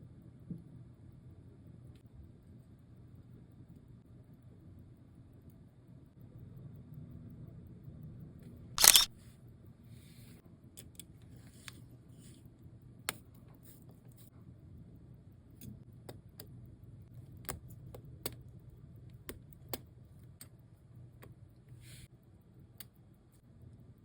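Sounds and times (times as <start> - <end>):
tools clicking on watch movement: 8.8 - 9.1.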